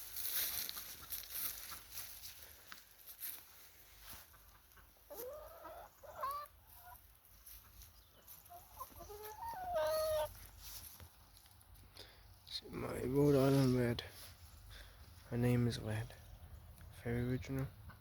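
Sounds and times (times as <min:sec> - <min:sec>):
hens calling: 0:03.9 - 0:11.5.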